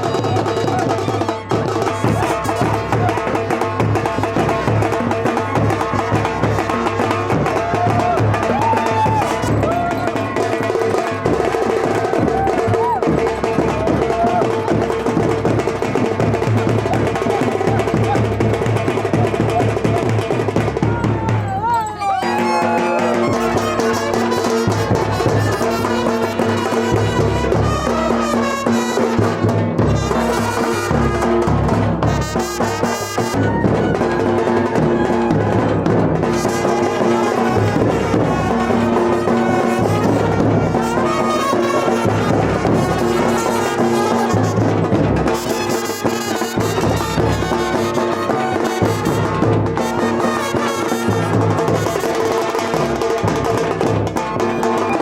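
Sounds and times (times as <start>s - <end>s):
brass instruments playing: 0.0s - 3.3s, 22.0s - 52.8s
drums: 0.0s - 55.0s.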